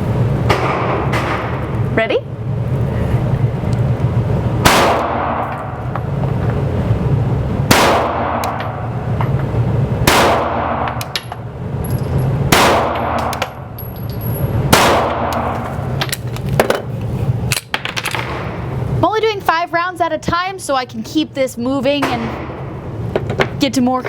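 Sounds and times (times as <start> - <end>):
steady low hum: 0.0 - 24.0
pistol shots echoing indoors: 4.6 - 5.8, 7.6 - 8.9, 10.0 - 11.2, 12.5 - 13.7, 14.7 - 15.8.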